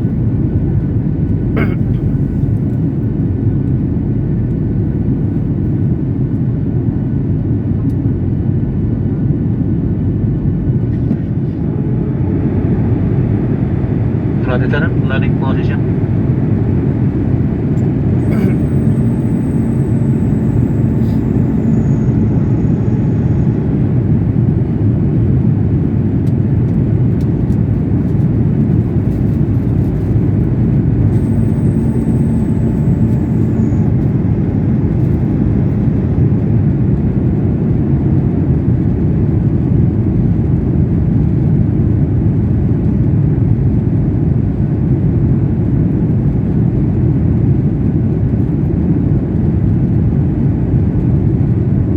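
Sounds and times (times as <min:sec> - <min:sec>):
jet engines heard from cabin: 0:00.0 - 0:51.9
faint high whine: 0:10.8 - 0:37.1.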